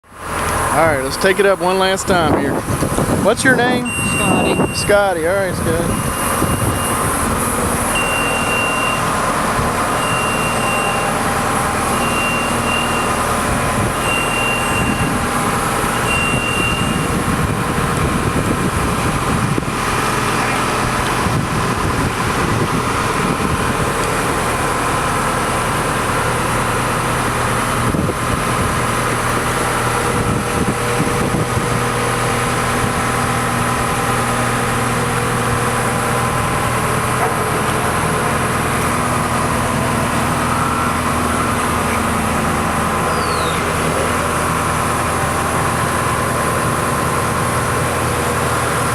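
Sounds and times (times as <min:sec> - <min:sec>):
lift engine running: 0:00.0 - 0:48.9
high alarm beep: 0:03.5 - 0:05.2, 0:05.8 - 0:07.1, 0:07.9 - 0:09.2, 0:10.0 - 0:11.2, 0:11.9 - 0:13.3, 0:14.0 - 0:15.3, 0:15.9 - 0:17.2.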